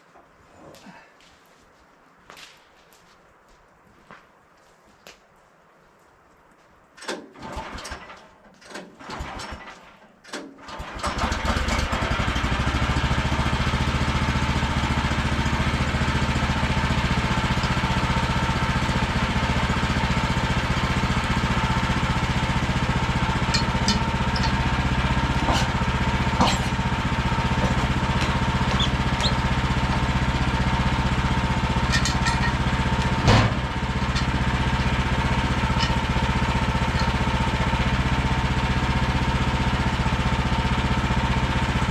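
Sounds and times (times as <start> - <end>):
engine cranking: 7.0 - 40.8
engine running steadily: 10.8 - 41.9.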